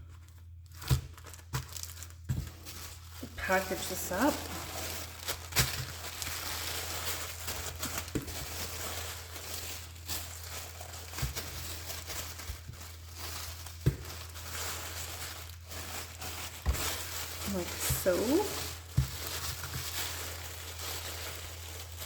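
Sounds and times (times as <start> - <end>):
packaging crinkling: 0.0 - 22.0.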